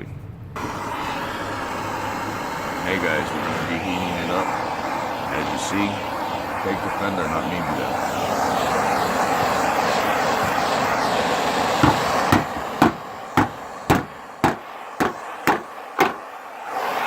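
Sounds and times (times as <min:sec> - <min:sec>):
torch rushing: 0:00.6 - 0:17.0
sharp metallic taps: 0:11.8 - 0:16.2.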